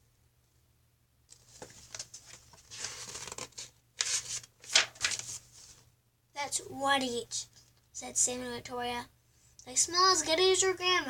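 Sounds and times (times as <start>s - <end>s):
book pages rustling: 1.3s - 5.9s.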